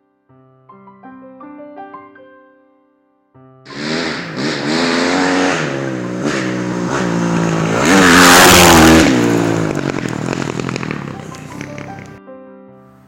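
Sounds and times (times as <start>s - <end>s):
engine revving: 3.7s - 12.2s.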